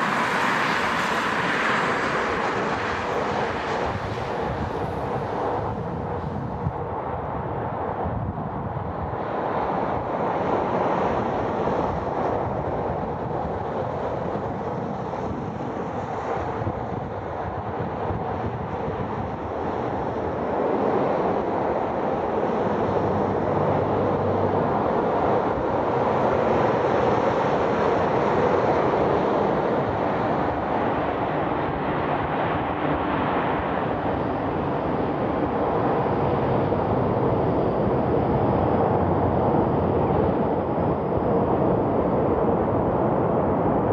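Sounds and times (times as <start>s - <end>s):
jet engine rushing noise: 0.0s - 6.7s
wind buffeting microphone: 0.0s - 43.9s.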